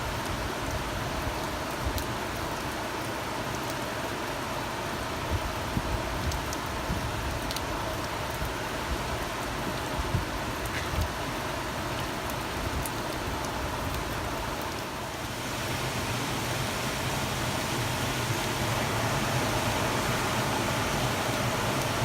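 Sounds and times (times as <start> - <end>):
rain falling: 0.0 - 22.0
deep rushing noise: 15.4 - 22.0.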